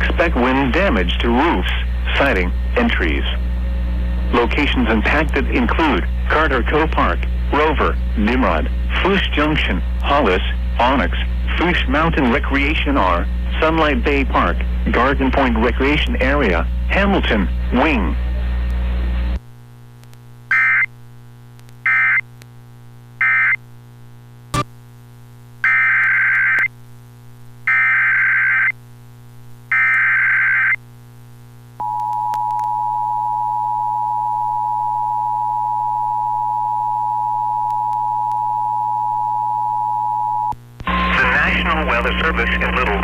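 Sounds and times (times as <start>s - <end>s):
low mains hum: 0.0s - 43.0s
click: 20.0s - 20.2s.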